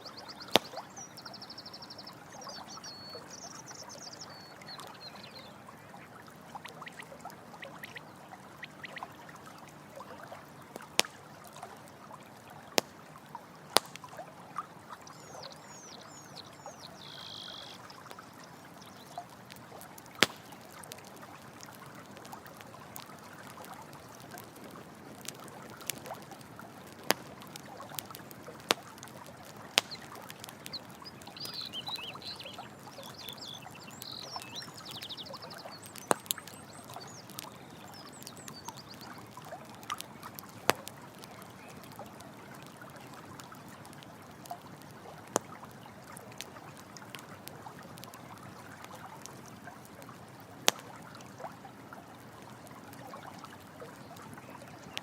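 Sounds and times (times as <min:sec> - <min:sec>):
campfire crackling: 0:00.0 - 0:55.0
water trickling and pouring: 0:02.3 - 0:49.2
high chirping animal calls: 0:17.0 - 0:17.8.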